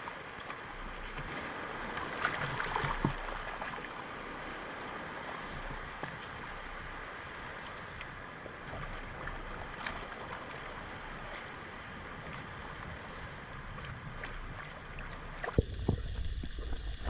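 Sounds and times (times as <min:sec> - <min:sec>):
low underwater rumble: 0:12.2 - 0:17.0
faint clicks and crackles: 0:15.4 - 0:17.0
underwater watery hiss: 0:15.6 - 0:17.0.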